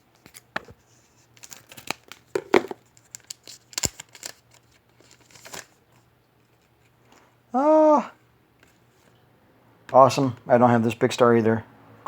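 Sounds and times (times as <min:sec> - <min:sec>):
cards and wrapper rustling: 0:00.0 - 0:06.9.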